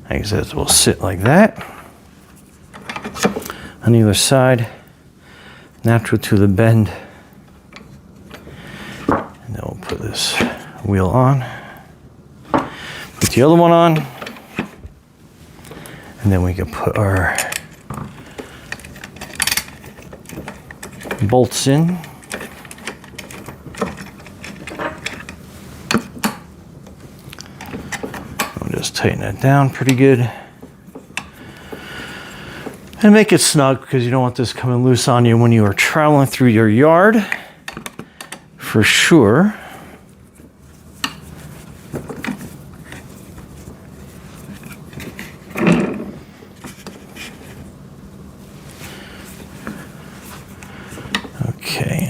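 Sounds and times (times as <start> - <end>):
metal clicks and rattles of tools: 17.1 - 26.5.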